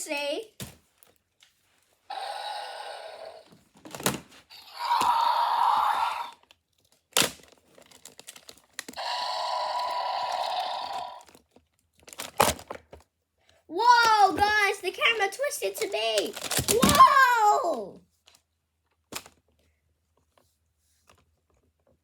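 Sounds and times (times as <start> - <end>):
raspy dinosaur roars: 2.1 - 3.5, 4.5 - 6.4, 9.0 - 11.2
plastic clacks: 15.8 - 17.0.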